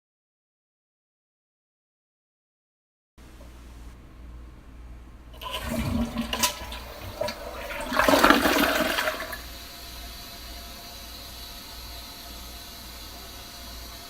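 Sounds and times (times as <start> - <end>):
toilet flushing: 5.3 - 14.0.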